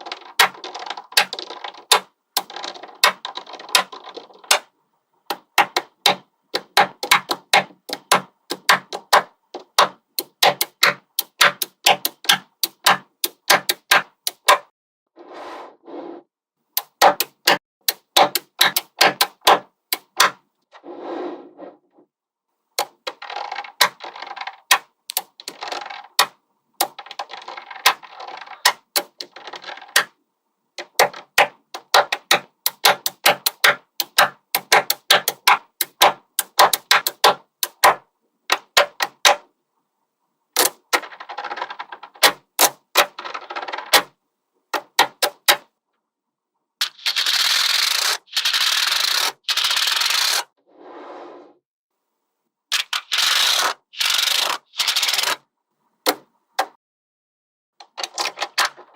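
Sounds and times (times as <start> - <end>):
magnetic balls rattling: 0.0 - 4.7, 22.8 - 30.2
magnetic balls snapping together: 0.0 - 4.7, 5.3 - 14.6, 16.8 - 20.4, 22.8 - 30.2, 30.8 - 39.4, 40.6 - 44.1.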